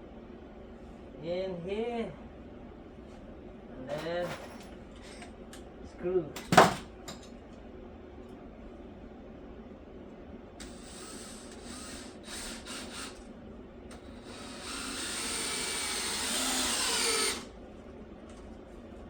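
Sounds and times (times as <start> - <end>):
power drill driving a screw: 10.6 - 13.2, 13.9 - 17.5.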